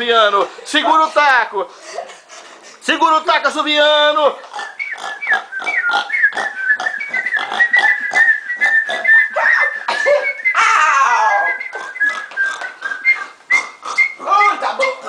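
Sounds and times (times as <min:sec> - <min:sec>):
person whistling: 0:04.8 - 0:14.6.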